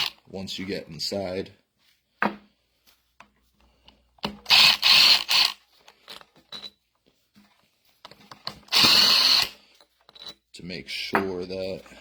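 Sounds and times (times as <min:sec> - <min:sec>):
power tool bursts: 0:04.5 - 0:05.6, 0:08.7 - 0:09.6.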